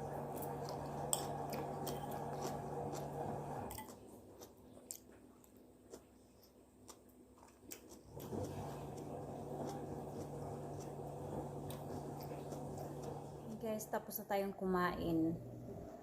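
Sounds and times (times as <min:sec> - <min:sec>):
steady low hum: 0:00.0 - 0:04.5, 0:08.0 - 0:16.0
person chewing food: 0:00.3 - 0:13.6.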